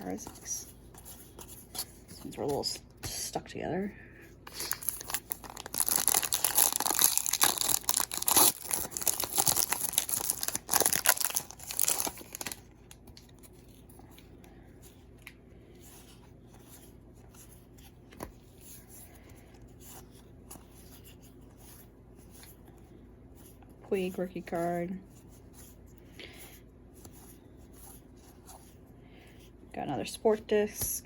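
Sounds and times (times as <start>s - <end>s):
wrapper tearing and crinkling: 4.5s - 13.0s
cards rustling: 4.5s - 21.6s.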